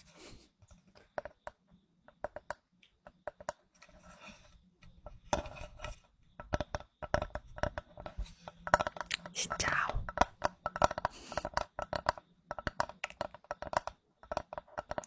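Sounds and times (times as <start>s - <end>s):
scratchy rub: 3.8s - 4.6s.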